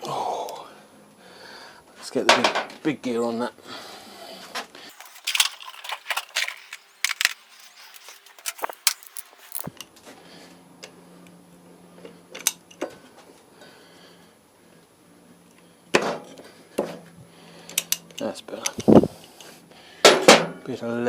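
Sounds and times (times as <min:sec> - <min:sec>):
metal hand tools clinking: 0:04.9 - 0:09.7.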